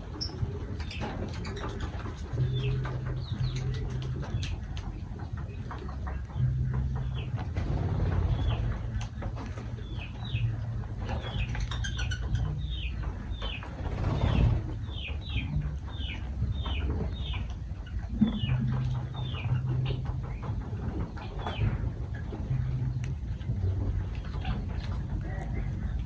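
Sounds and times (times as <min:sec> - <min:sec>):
lovebirds chirping: 0:00.0 - 0:26.0
low steady hum: 0:00.0 - 0:26.0.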